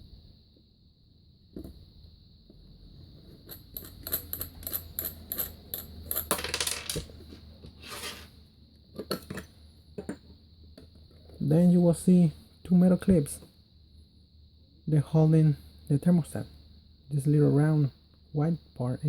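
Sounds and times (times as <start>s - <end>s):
short scrapes: 7.8s - 8.3s.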